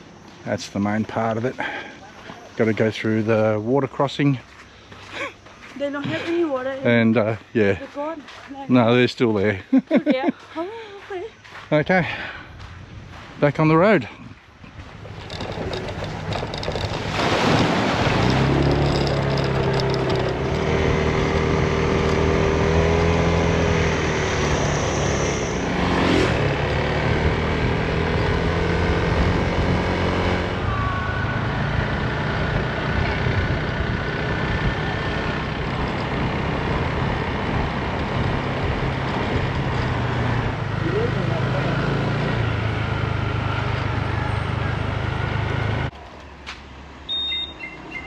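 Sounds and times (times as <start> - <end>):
scooter engine running: 15.0 - 17.2, 17.9 - 24.6, 30.6 - 42.9.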